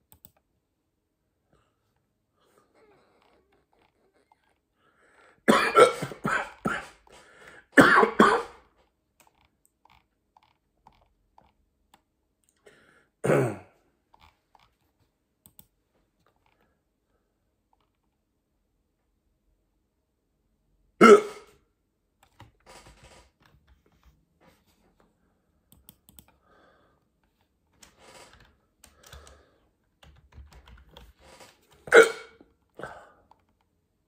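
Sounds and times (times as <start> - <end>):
person coughing: 5.4 - 8.6, 13.2 - 13.8, 21.0 - 21.6, 31.9 - 33.2.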